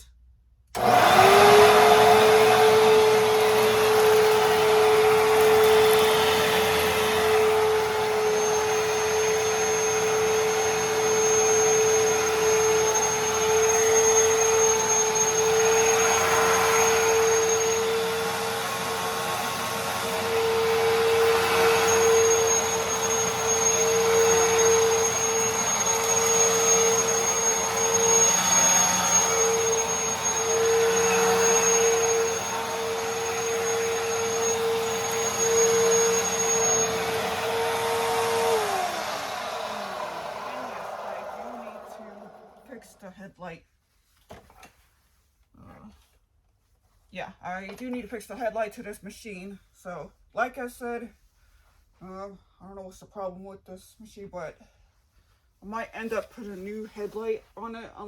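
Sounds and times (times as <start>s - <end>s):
vacuum cleaner motor whine: 0.7s - 43.0s.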